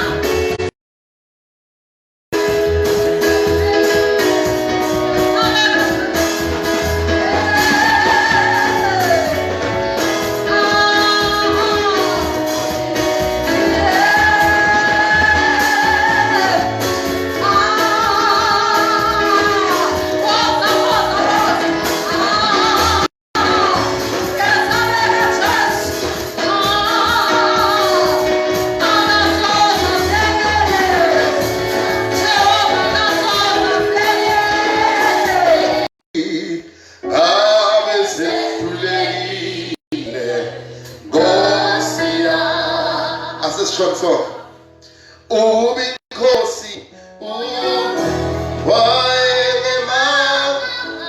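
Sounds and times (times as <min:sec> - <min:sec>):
person singing: 0:47.2 - 0:51.0.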